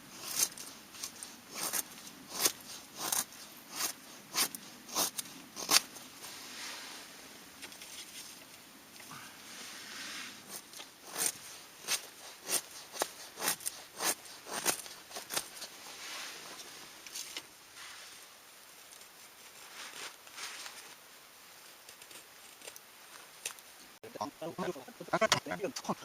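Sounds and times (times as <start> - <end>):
soft rustling: 0.1 - 24.0.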